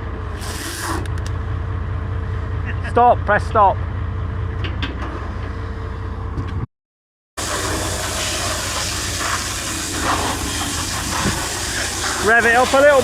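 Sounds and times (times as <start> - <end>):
tractor engine rumbling: 0.0 - 6.7
loud steady rushing hiss: 7.4 - 13.0.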